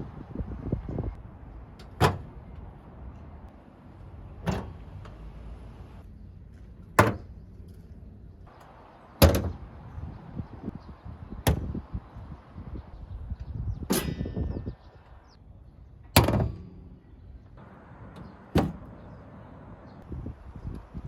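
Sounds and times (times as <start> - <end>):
car bonnet slamming shut: 1.8 - 2.4, 4.4 - 4.8, 7.0 - 7.3, 9.2 - 9.6, 16.1 - 16.8, 18.1 - 19.2.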